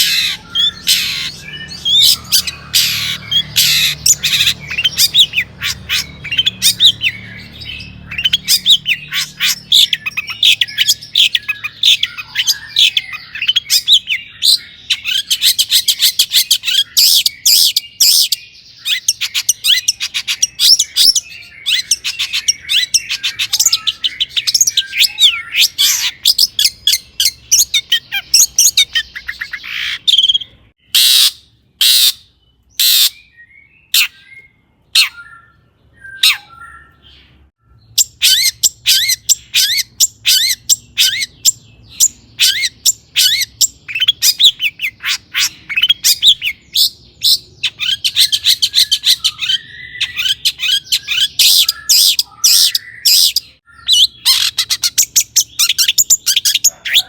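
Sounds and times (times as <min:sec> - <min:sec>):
shrike singing harsh chattering: 0:00.0 - 0:32.2.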